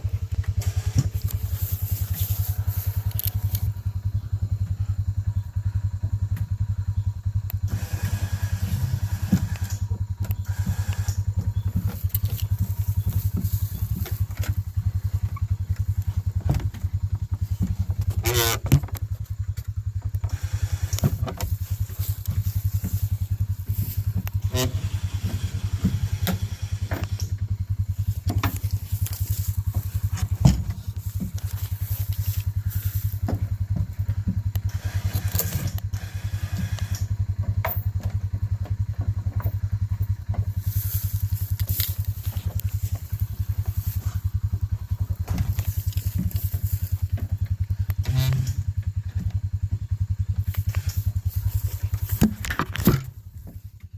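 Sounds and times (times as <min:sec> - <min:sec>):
small engine running: 0:00.0 - 0:53.9
knocks and rattles: 0:09.1 - 0:32.4.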